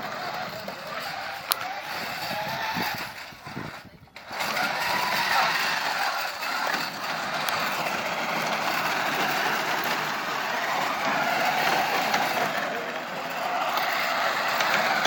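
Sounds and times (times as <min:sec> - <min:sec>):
electric motors whirring: 0:00.0 - 0:15.0
wheels scrubbing on asphalt: 0:00.0 - 0:15.0.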